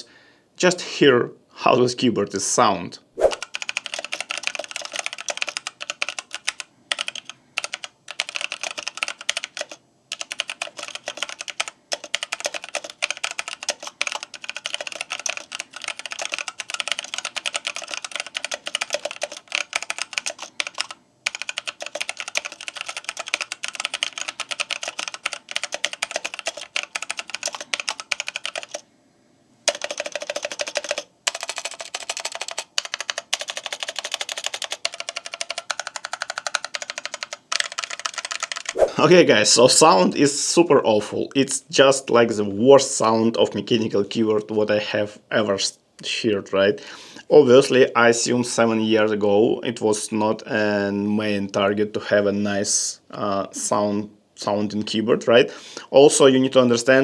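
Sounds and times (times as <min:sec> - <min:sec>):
mechanical keyboard typing: 0:03.3 - 0:28.8, 0:29.7 - 0:38.8.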